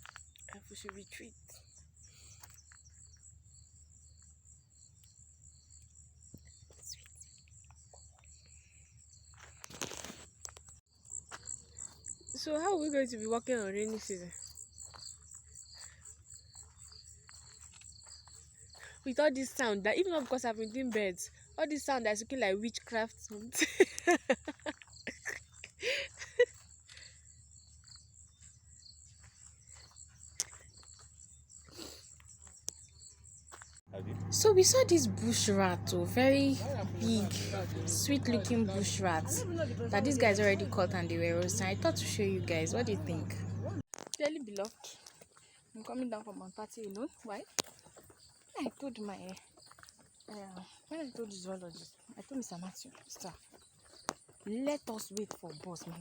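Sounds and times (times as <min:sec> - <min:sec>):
insects trilling: 0:00.0 - 0:33.8
voice: 0:00.5 - 0:01.5, 0:12.4 - 0:14.3, 0:19.0 - 0:24.3, 0:34.0 - 0:45.0, 0:45.8 - 0:47.4, 0:48.6 - 0:49.4, 0:50.3 - 0:53.3, 0:54.5 - 0:56.0
low rumble: 0:34.0 - 0:43.8.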